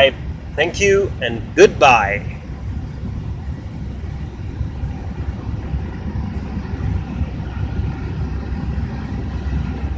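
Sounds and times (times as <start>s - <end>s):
machinery rumbling: 0.0s - 9.9s.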